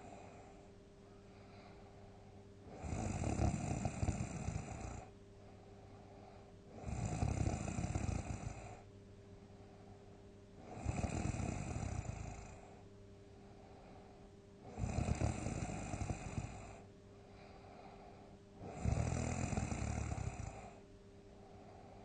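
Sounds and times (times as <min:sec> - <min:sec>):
person snoring loudly: 0:02.7 - 0:05.1, 0:06.7 - 0:08.8, 0:10.6 - 0:12.7, 0:14.7 - 0:16.8, 0:18.6 - 0:20.8.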